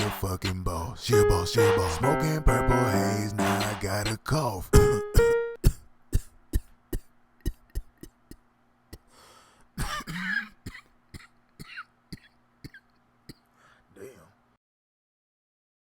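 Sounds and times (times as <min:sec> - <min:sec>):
man coughing: 0:04.8 - 0:07.7, 0:09.8 - 0:13.4.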